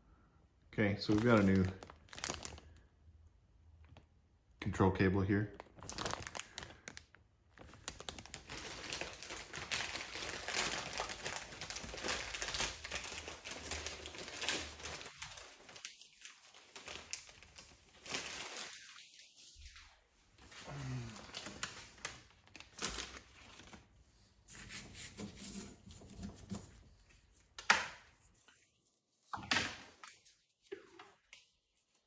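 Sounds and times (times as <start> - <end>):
packaging crinkling and rustling: 1.0 - 2.9, 5.5 - 28.0.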